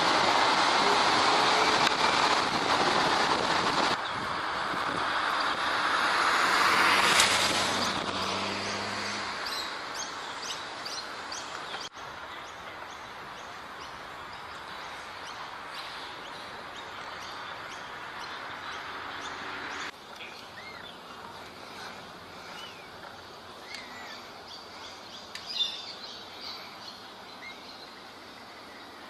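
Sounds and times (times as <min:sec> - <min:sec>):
loud rushing noise: 0:00.0 - 0:09.9
bird chirping: 0:08.6 - 0:29.0.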